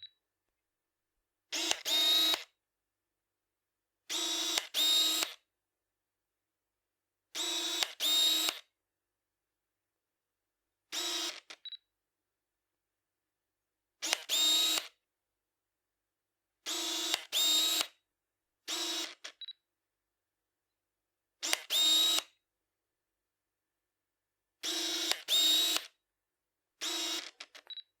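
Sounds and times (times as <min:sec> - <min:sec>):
small clicks: 0:01.5 - 0:02.5, 0:07.8 - 0:08.6, 0:11.3 - 0:11.8, 0:21.4 - 0:22.3, 0:25.0 - 0:25.9, 0:27.1 - 0:27.9.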